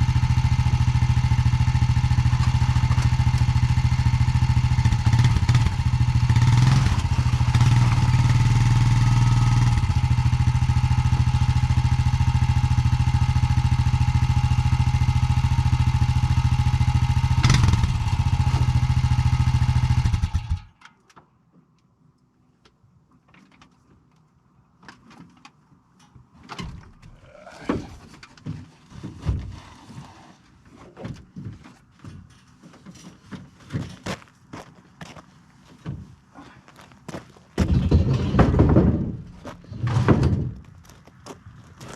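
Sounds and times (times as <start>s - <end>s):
vehicle engine running: 0.0s - 20.7s
knocks and clatter: 37.6s - 41.0s.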